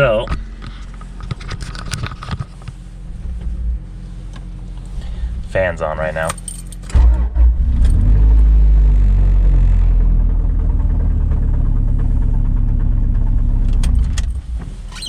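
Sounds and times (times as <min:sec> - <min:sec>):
radiator cooling fan droning: 0:00.0 - 0:06.9.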